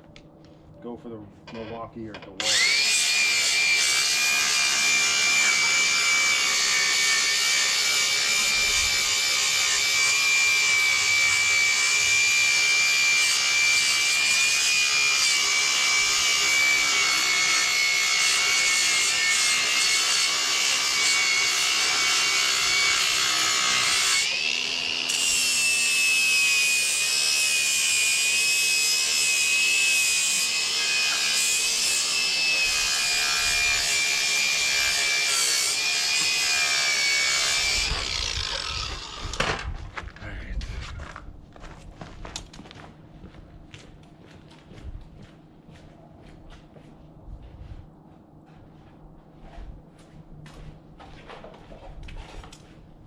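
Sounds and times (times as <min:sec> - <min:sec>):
angle grinder grinding steel: 0:02.4 - 0:39.4.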